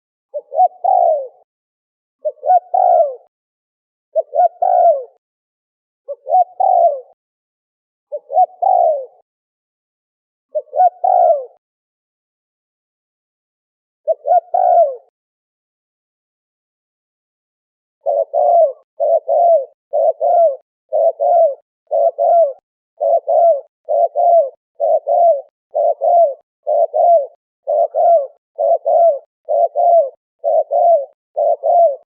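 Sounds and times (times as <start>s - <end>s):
dove cooing: 0.3s - 1.5s, 2.2s - 3.3s, 4.1s - 5.2s, 6.1s - 7.2s, 8.1s - 9.2s, 10.5s - 11.6s, 14.0s - 15.1s, 18.0s - 32.0s.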